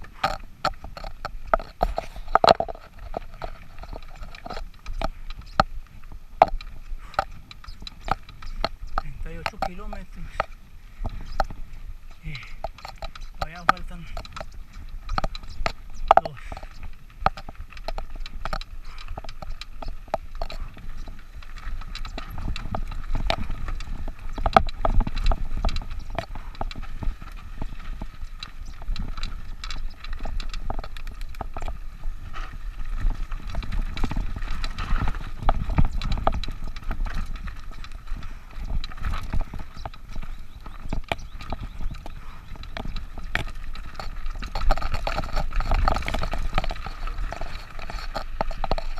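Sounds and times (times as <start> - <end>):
mountain bike rattling over trail: 0.0 - 48.9
wind rumble on microphone: 0.0 - 48.9.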